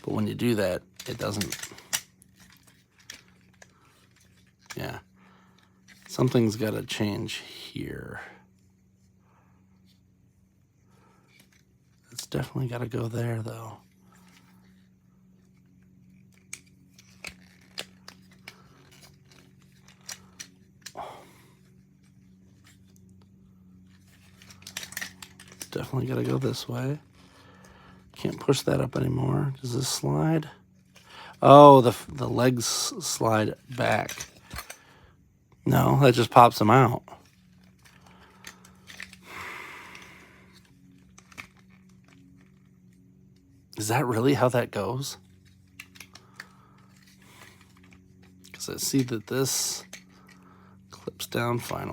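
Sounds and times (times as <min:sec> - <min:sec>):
plastic joints clicking: 0:00.0 - 0:04.8, 0:24.1 - 0:26.4, 0:37.6 - 0:39.2
plastic action figure clicking: 0:01.0 - 0:03.6.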